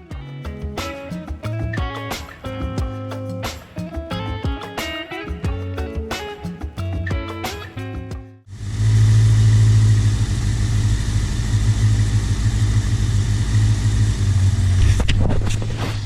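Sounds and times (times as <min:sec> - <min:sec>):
background music: 0:00.0 - 0:08.4
motorcycle engine idling: 0:08.6 - 0:15.0.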